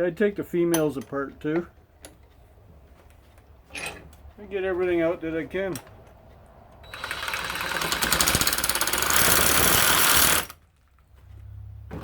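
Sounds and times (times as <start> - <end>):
power saw cutting plastic: 6.9 - 10.6.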